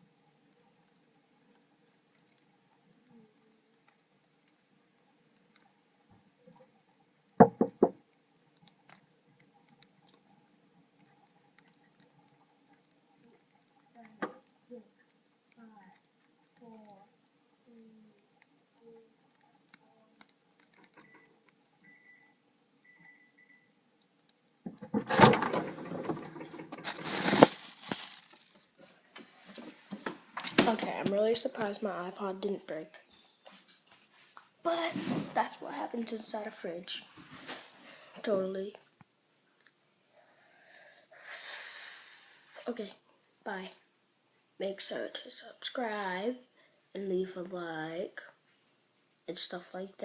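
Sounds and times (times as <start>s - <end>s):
faint low background noise: 0.0s - 50.0s
knocks on something hard: 7.4s - 8.0s
hands handling things clattering: 24.8s - 28.7s.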